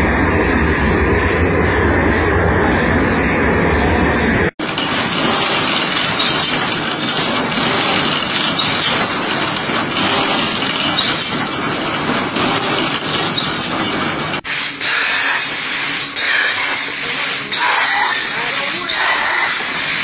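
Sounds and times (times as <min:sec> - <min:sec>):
machine clattering: 0:04.6 - 0:20.0.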